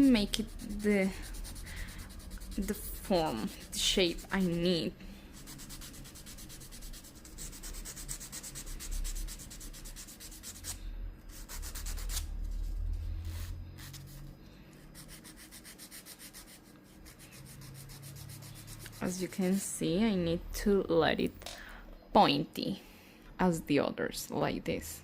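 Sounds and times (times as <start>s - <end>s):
nail file rasping: 0.0s - 4.6s, 5.4s - 12.3s, 15.0s - 19.1s.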